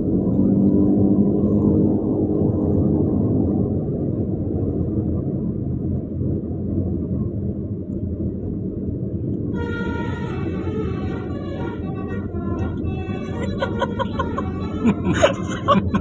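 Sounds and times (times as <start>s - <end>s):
vehicle rumbling on road: 0.0s - 16.0s
multi-tone bus horn: 9.5s - 16.0s.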